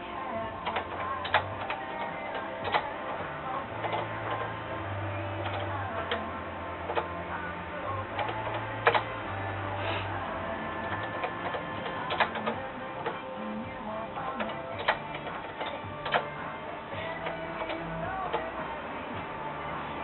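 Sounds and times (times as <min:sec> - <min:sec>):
steady low hum: 0:00.0 - 0:20.0
keyboard typing clicks: 0:00.6 - 0:02.9, 0:10.8 - 0:12.6.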